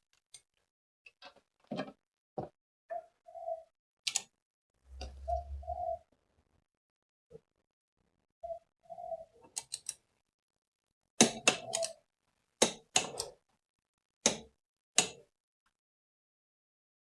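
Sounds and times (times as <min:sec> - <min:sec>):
brief squeak: 0:04.9 - 0:06.0.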